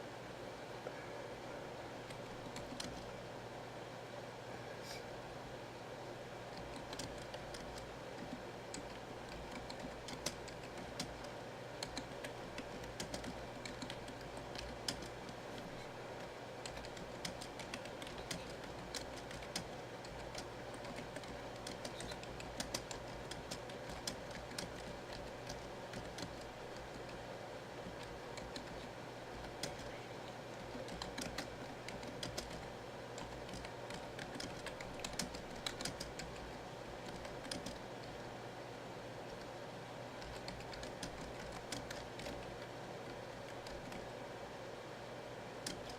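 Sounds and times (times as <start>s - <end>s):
steady background hum: 0.0s - 45.9s
keyboard typing clicks: 2.1s - 3.1s, 6.5s - 27.2s, 27.8s - 38.2s, 40.2s - 44.1s, 45.6s - 45.9s.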